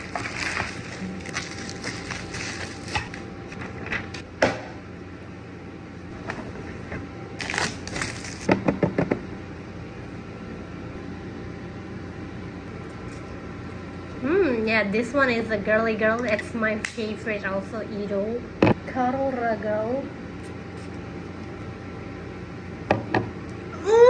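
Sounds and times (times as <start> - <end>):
packaging crackling and rustling: 0.0 - 3.2, 7.4 - 8.5.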